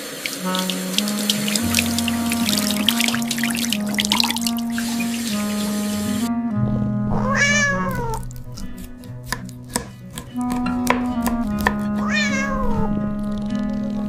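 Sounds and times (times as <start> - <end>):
background music: 0.3 - 14.0
cat meowing: 7.1 - 8.3, 12.0 - 13.0.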